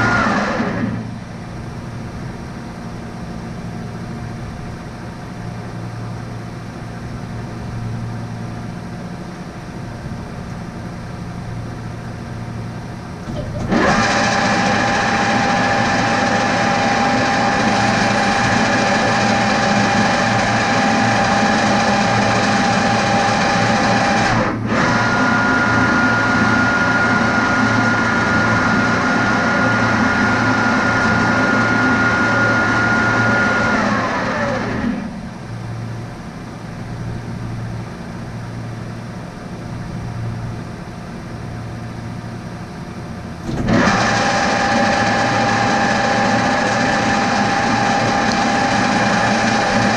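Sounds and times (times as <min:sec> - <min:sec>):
lathe motor whining: 0:00.0 - 0:01.2, 0:13.2 - 0:35.3, 0:43.4 - 0:49.9
motor winding down: 0:00.0 - 0:01.2, 0:13.2 - 0:35.2, 0:43.4 - 0:49.9.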